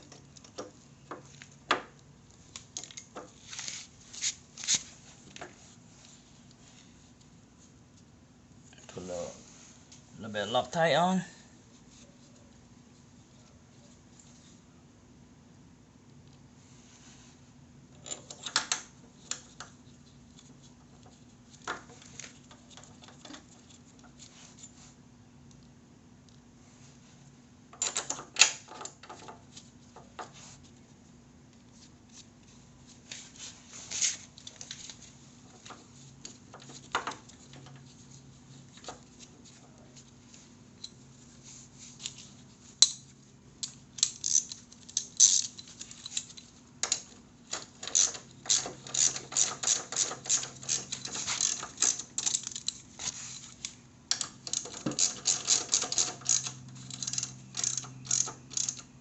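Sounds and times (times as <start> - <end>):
ratchet wrench clicking: 43.6 - 45.6, 47.8 - 52.8, 54.1 - 58.9.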